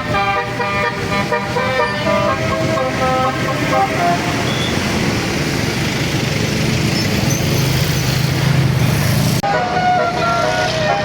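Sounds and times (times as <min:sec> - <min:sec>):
multi-tone bus horn tune: 0:00.0 - 0:05.0, 0:09.4 - 0:11.0
bus engine rumble: 0:00.0 - 0:11.0
road noise: 0:00.0 - 0:11.0.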